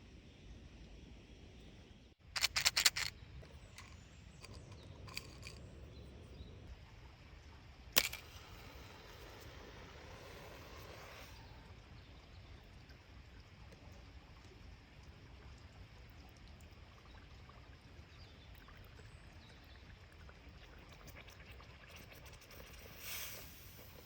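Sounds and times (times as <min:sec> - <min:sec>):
low steady background noise: 0:00.0 - 0:24.0.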